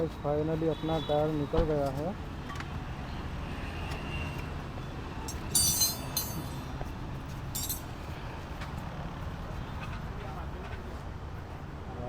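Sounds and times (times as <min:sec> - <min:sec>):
ringing metallic clinks: 0:05.3 - 0:06.7, 0:07.6 - 0:07.9.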